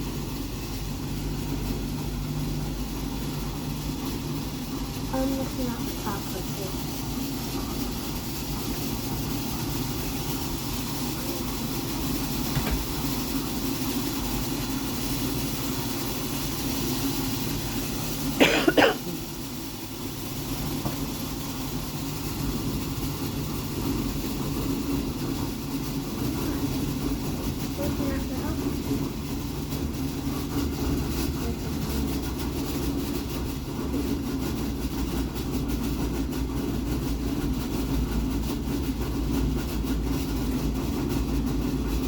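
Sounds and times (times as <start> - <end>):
low droning hum: 0.0 - 42.0.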